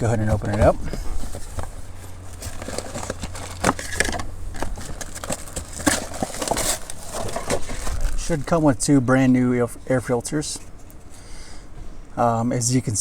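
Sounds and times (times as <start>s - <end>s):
packaging rustling and crinkling: 0.0s - 8.6s.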